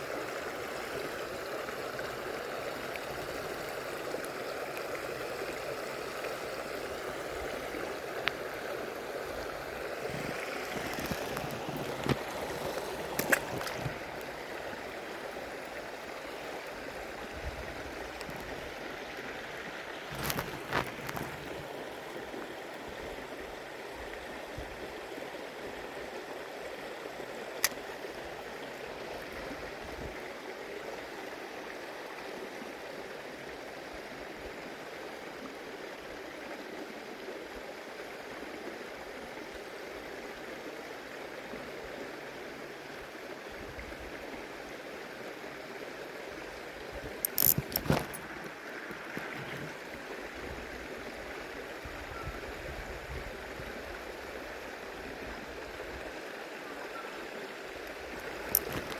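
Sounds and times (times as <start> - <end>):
stream water flowing: 0.0 - 58.9
sharp clicks: 47.1 - 48.4, 58.2 - 58.9.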